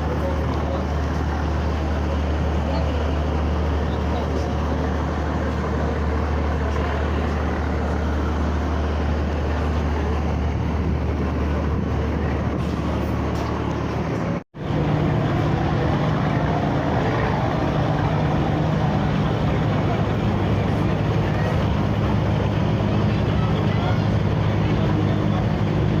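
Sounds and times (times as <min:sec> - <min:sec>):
ferry engine drone: 0:00.0 - 0:26.0.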